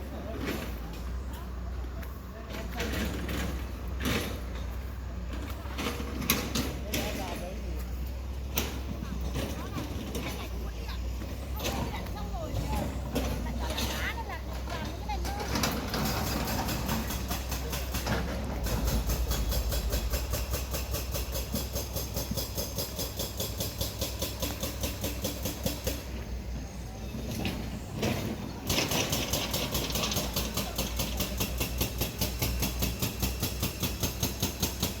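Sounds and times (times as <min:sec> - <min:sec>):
rhythmic mechanical clatter: 0:08.3 - 0:26.2, 0:27.3 - 0:35.0
steady low hum: 0:15.8 - 0:23.9.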